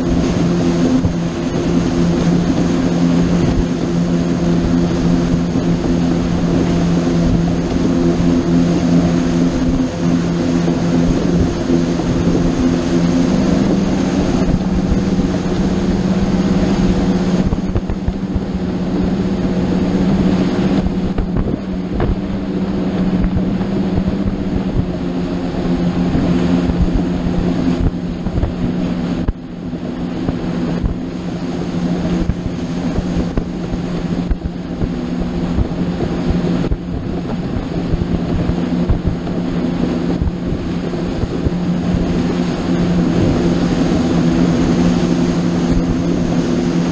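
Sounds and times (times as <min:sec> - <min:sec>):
motorboat engine running: 0:00.0 - 0:46.9
wind noise on microphone: 0:00.0 - 0:46.9.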